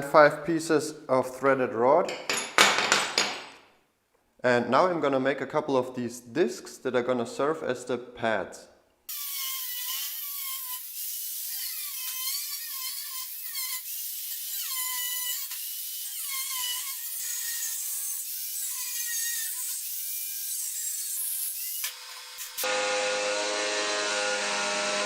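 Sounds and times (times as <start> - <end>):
power tool grinding metal: 9.1 - 25.0.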